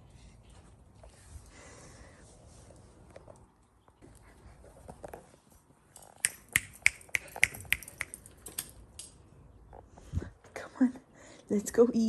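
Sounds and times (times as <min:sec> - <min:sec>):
sharp light clicks: 0:06.2 - 0:09.1.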